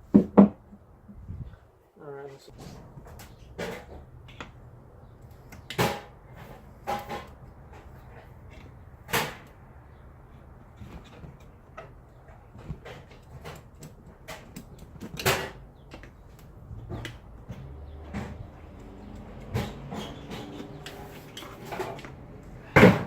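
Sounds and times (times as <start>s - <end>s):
metal tools clunking: 10.4s - 23.0s.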